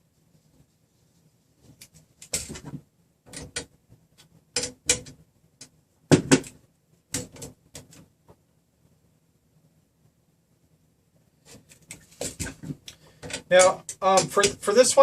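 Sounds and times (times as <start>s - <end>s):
sharp metallic clicks and knocks: 2.2s - 8.1s, 11.8s - 14.7s.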